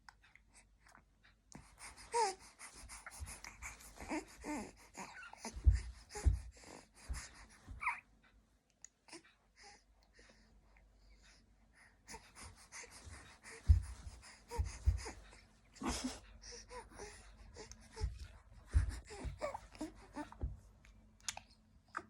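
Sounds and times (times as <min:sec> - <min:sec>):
dull low thumps: 0:05.5 - 0:07.8, 0:13.2 - 0:15.3, 0:17.6 - 0:20.8.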